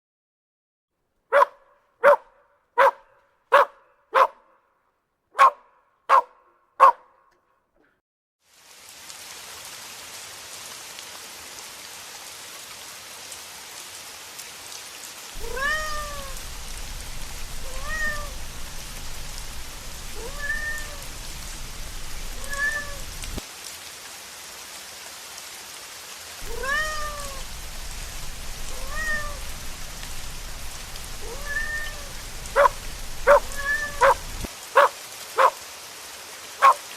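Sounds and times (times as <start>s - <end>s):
puppy barking: 1.3s - 4.7s, 5.3s - 7.3s, 15.4s - 16.4s, 31.2s - 35.6s, 36.6s - 36.9s
rain-like hiss: 8.4s - 36.9s
cat meowing: 15.4s - 16.8s, 17.4s - 21.3s, 22.2s - 23.3s, 26.4s - 27.6s, 28.6s - 29.8s, 31.2s - 35.5s.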